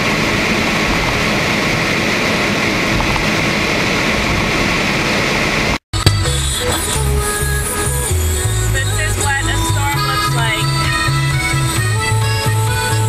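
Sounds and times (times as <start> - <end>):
car road and engine noise: 0.0 - 13.0
music with repeating bass line: 6.0 - 13.0.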